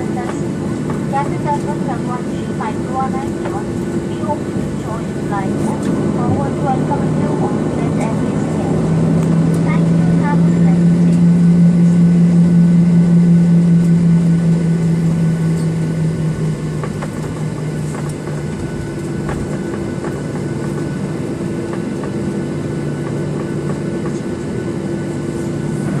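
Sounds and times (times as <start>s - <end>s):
airliner cabin engine hum: 0.0s - 26.0s
light clicks in cabin: 16.8s - 21.0s.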